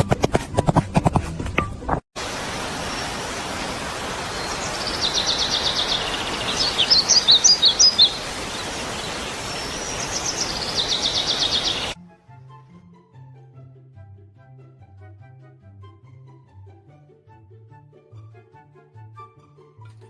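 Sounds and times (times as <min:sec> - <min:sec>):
songbird trilling and chirping: 0:04.5 - 0:12.0.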